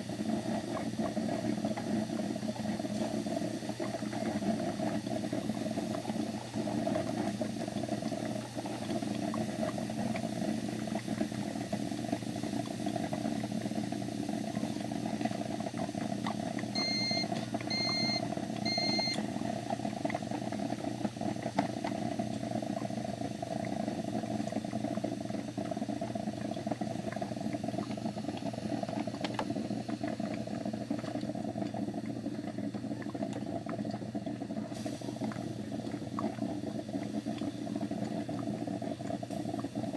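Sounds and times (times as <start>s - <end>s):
coffee machine bubbling and gurgling: 0.0s - 39.9s
short high beeps: 16.8s - 19.2s.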